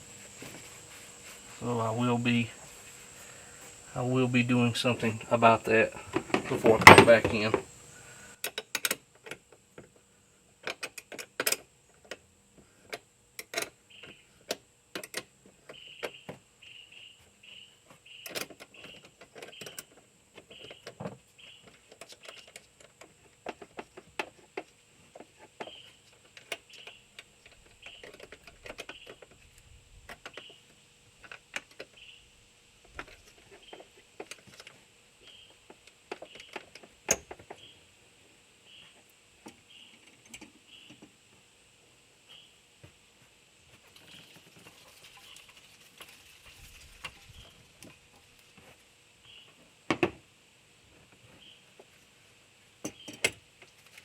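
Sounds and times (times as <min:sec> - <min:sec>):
metallic clicks of hand tools: 0:08.4 - 0:09.4.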